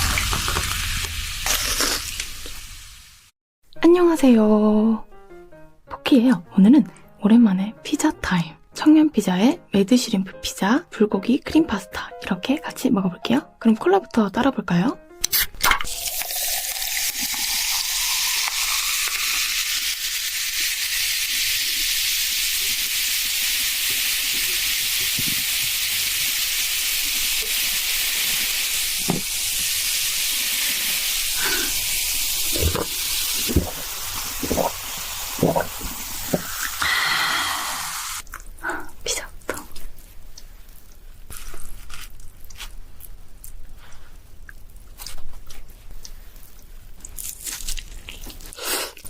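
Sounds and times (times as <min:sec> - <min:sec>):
carbonation fizzing: 0:00.0 - 0:03.2, 0:15.8 - 0:38.2
cola pouring into a glass: 0:15.8 - 0:20.7.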